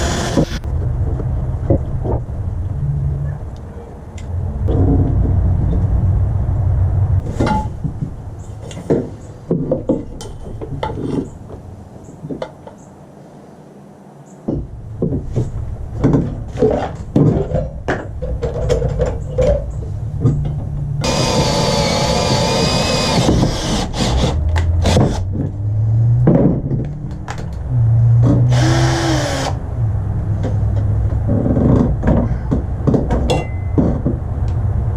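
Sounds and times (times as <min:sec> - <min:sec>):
low rumble: 0:00.6 - 0:08.5, 0:19.7 - 0:32.9
objects knocking and clattering: 0:07.2 - 0:11.6, 0:14.5 - 0:20.8, 0:26.2 - 0:28.5, 0:30.4 - 0:34.4
humming with pitched tones: 0:24.2 - 0:31.1.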